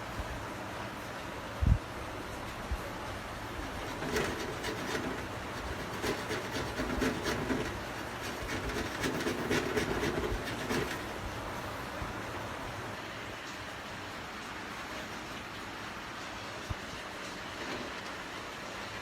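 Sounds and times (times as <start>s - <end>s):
nail file rasping on metal: 3.6s - 11.2s.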